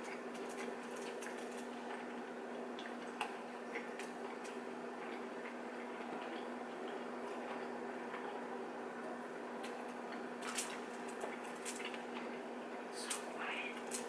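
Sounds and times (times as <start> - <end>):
people chewing food: 0.0 - 14.0
steady low hum: 0.0 - 14.0.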